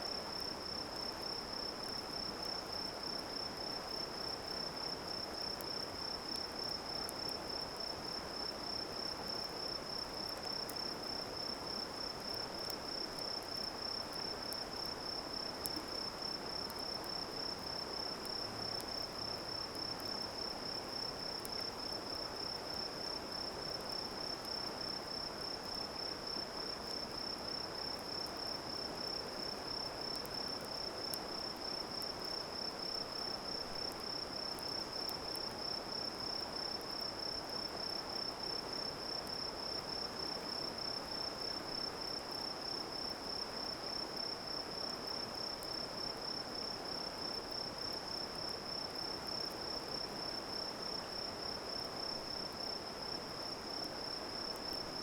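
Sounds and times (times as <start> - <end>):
campfire crackling: 8.4 - 23.1.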